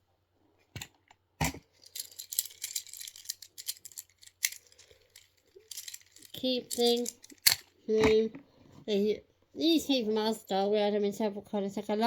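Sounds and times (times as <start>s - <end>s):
plastic fidget cube clicking: 1.8s - 7.7s.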